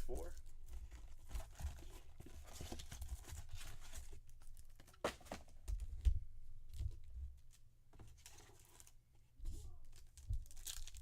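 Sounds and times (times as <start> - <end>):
wrapper crinkling and tearing: 9.8 - 11.0.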